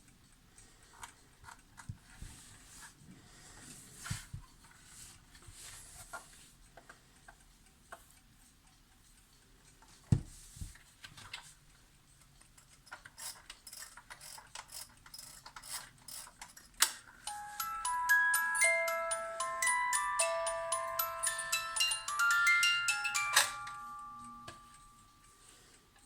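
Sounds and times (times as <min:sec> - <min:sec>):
alarm clock mechanism clicks: 0:12.2 - 0:26.0
alarm clock chiming tones: 0:17.2 - 0:25.9.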